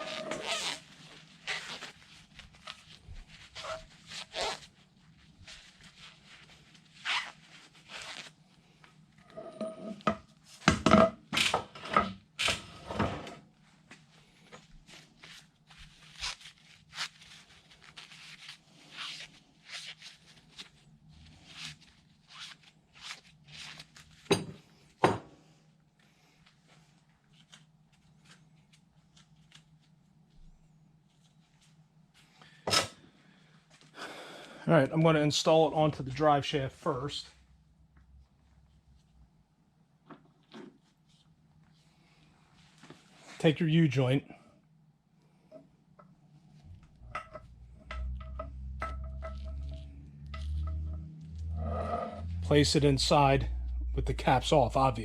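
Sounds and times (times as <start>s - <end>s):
steady low hum: 46.1s - 55.0s.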